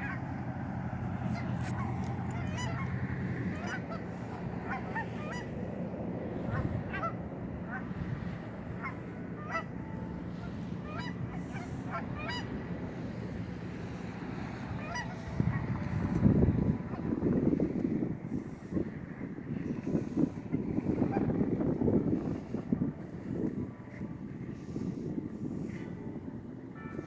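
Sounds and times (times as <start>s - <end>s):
geese honking: 0.0s - 5.7s, 6.4s - 7.9s, 8.8s - 18.8s, 19.7s - 23.4s.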